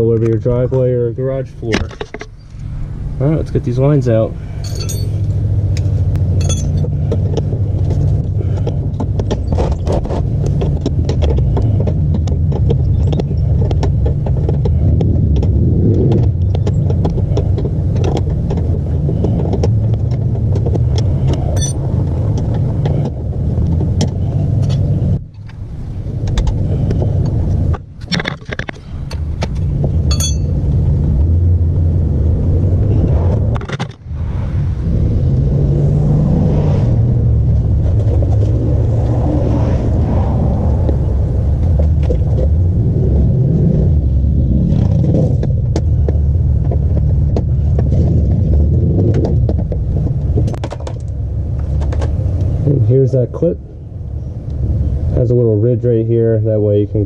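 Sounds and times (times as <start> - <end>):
loud low rumble: 0.0 - 9.0, 19.1 - 28.0, 28.8 - 57.0
wrench and metal fittings clinking: 4.6 - 5.2, 6.4 - 6.9, 21.6 - 21.8, 30.1 - 30.5.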